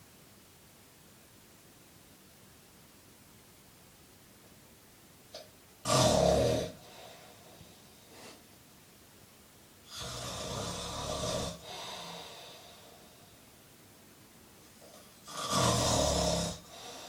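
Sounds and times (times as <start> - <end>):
man snoring: 5.8 - 7.3, 9.9 - 13.0, 15.2 - 17.0
faint breath: 6.8 - 8.5, 11.6 - 13.5, 16.6 - 17.0.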